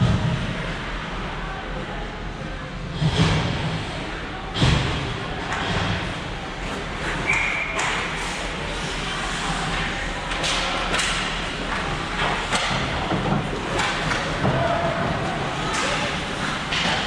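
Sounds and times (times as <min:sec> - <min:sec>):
crowd murmur: 0:00.0 - 0:17.0
hockey sticks and puck knocking: 0:10.3 - 0:17.0.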